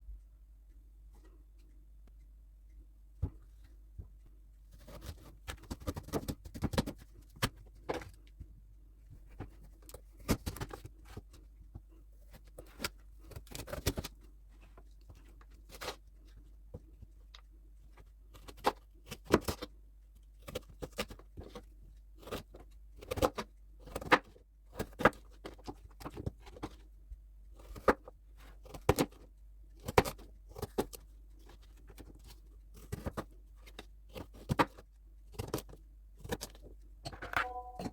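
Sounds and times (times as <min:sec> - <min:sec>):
faint steady hum: 0:00.0 - 0:05.0.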